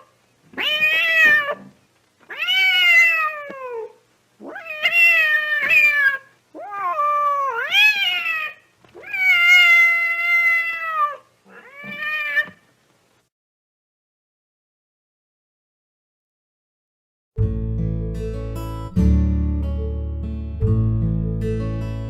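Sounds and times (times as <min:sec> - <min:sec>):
cat yowling: 0:00.0 - 0:01.7, 0:02.3 - 0:12.6.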